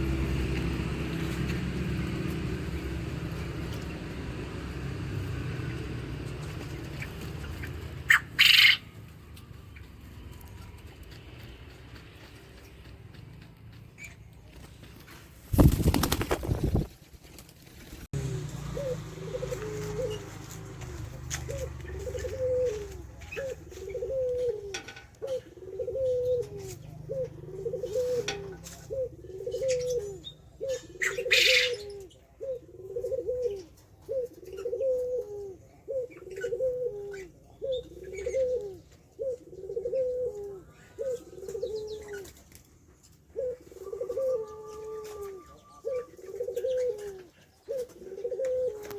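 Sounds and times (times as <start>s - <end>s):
dove cooing: 0.0s - 9.0s, 18.2s - 48.9s
wings fluttering: 5.4s - 8.8s, 14.0s - 24.6s
loud short rustle: 15.1s - 18.1s.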